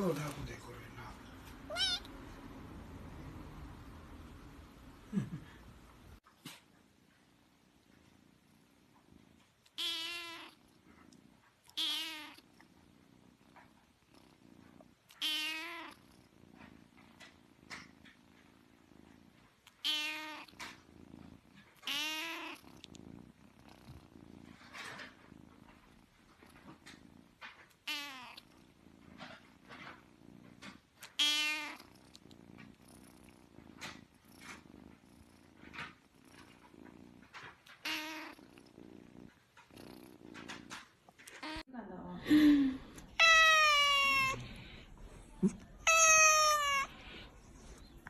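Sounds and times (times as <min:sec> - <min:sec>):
faint purr: 0:00.0 - 0:48.0
kitten mewing: 0:01.7 - 0:02.1, 0:42.7 - 0:47.3.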